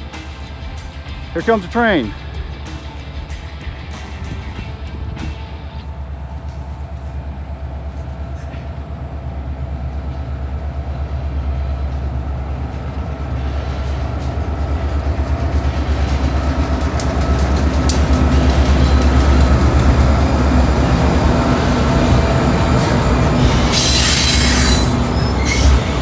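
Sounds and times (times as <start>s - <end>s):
diesel locomotives rumbling: 0.0s - 26.0s.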